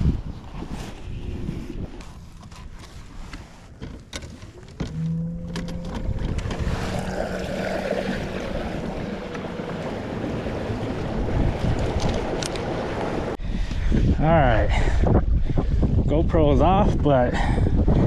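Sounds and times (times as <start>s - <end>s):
wind buffeting microphone: 0.0s - 3.8s, 4.6s - 18.0s
water rushing: 5.6s - 13.4s.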